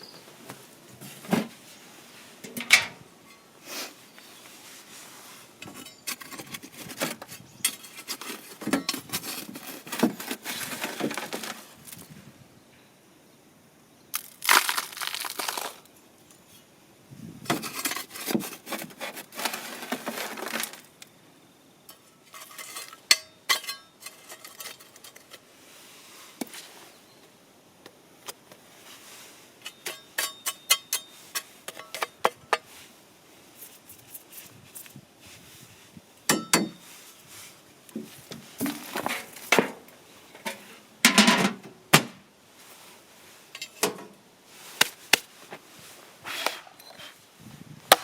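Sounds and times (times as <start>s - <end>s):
crinkling and rustling: 0.0s - 3.5s, 4.2s - 12.1s, 14.2s - 15.9s, 17.4s - 21.1s, 22.3s - 25.5s, 36.8s - 41.6s.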